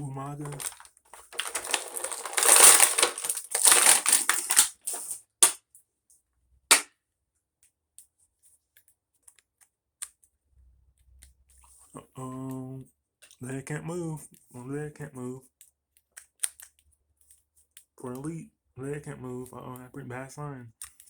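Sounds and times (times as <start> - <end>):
plastic packaging crinkling: 0.4 - 5.6.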